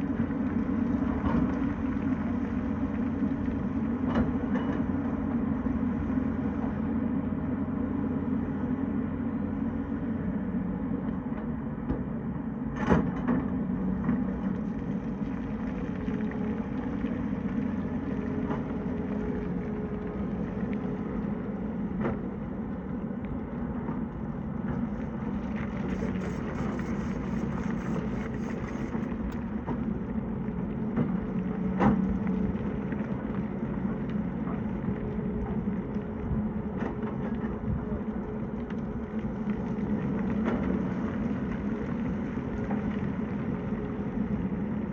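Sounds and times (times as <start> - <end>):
excavator diesel engine running: 13.4 - 33.8.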